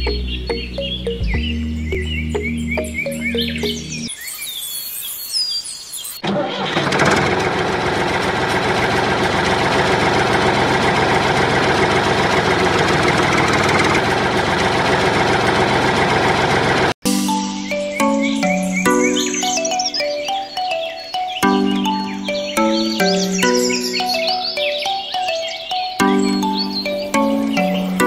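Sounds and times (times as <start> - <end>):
engine starting and running: 6.2 - 17.0.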